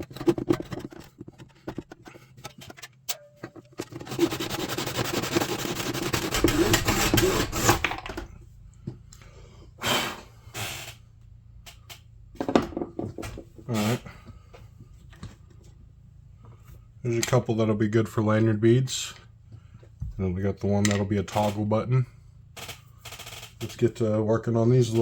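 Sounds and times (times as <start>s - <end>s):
hand saw rasping through antler: 3.9s - 7.8s.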